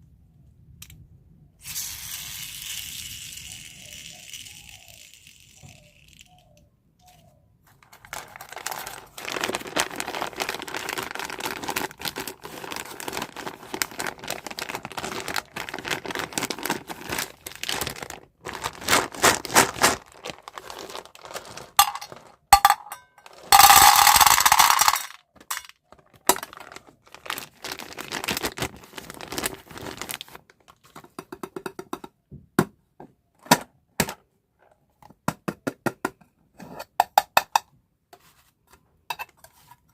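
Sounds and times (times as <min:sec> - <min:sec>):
small hard objects clicking: 0:02.1 - 0:06.7, 0:07.8 - 0:29.4
plastic packaging crinkling: 0:07.8 - 0:30.9.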